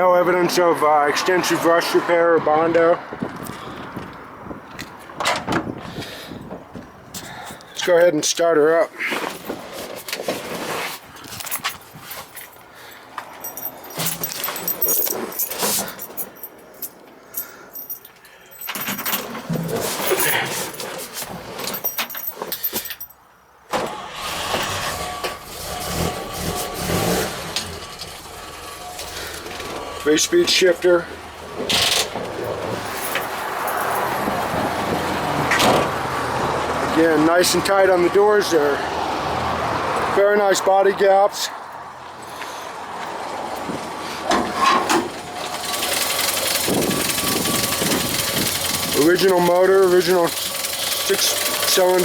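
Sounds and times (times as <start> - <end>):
car engine starting and running: 23.7 - 40.4, 42.0 - 52.0.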